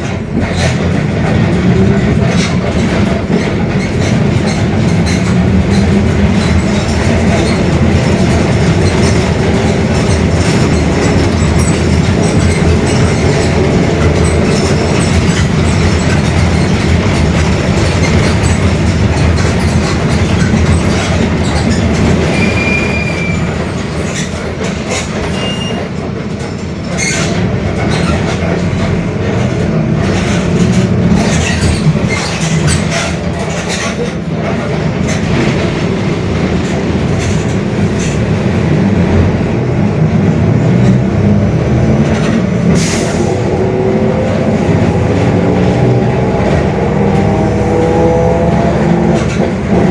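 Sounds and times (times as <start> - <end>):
bus engine running: 0.0 - 22.6, 23.4 - 49.9
brief high squeal: 22.2 - 23.6, 25.3 - 25.9.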